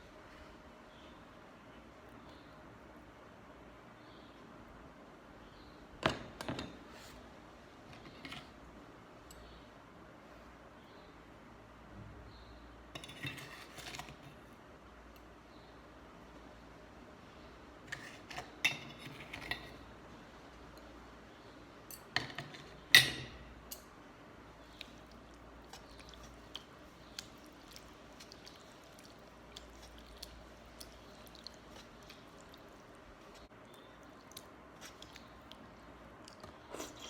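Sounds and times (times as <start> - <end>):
soft wet clicks: 24.6 - 36.7.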